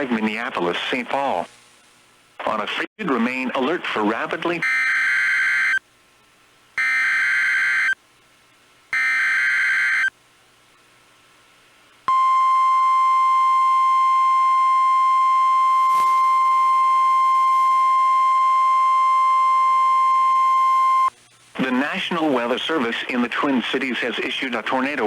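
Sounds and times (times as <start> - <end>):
steady high-pitched alarm tone: 6.8 - 8.0, 9.0 - 10.1.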